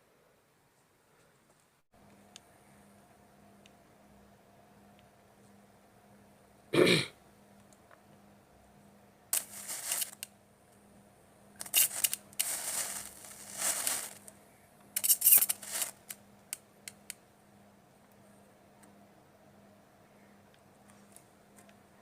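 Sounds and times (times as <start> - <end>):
sharp electric snaps: 9.3 - 10.3, 11.6 - 14.4, 15.0 - 17.2
welding arc crackling sparks: 9.4 - 10.3, 11.6 - 14.3, 15.0 - 16.2.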